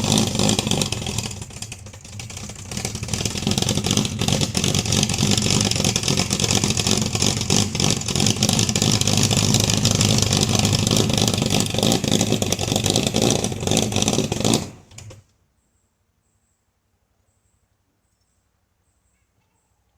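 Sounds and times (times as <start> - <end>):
car engine running loudly: 0.0 - 15.2.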